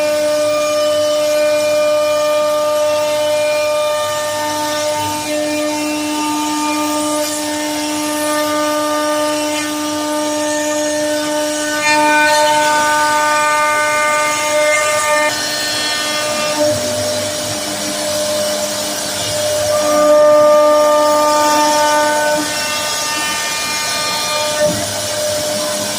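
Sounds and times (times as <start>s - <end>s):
router spindle whine: 0.0s - 25.9s.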